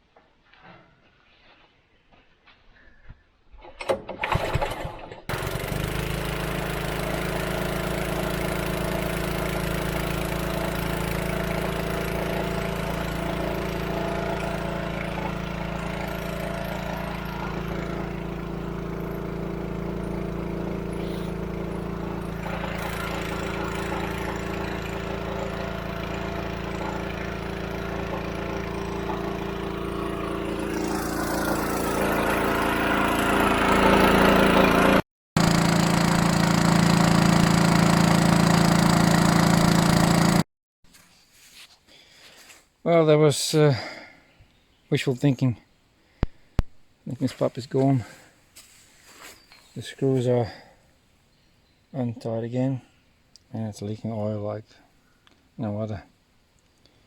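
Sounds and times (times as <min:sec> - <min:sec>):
water pump engine running: 0:04.2 - 0:40.4.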